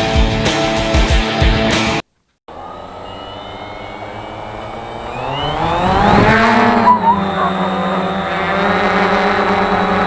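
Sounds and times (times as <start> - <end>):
quadcopter motors and propellers: 2.5 - 10.0.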